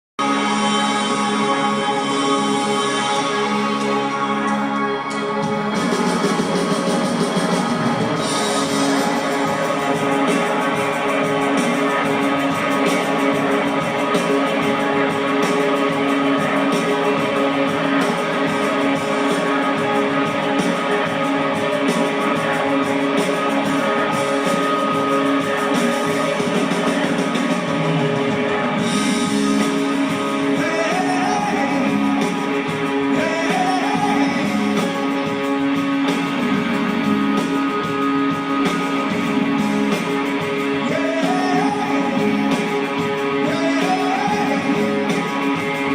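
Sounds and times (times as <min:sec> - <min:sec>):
live rock band: 0:00.2 - 0:45.9
people singing: 0:30.5 - 0:35.0, 0:40.8 - 0:45.9.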